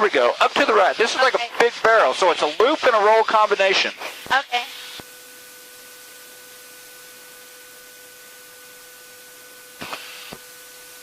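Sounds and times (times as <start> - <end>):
faint electrical whine: 0.0 - 11.0
static burst: 0.0 - 11.0
intercom line hiss: 2.2 - 5.2, 9.8 - 11.0.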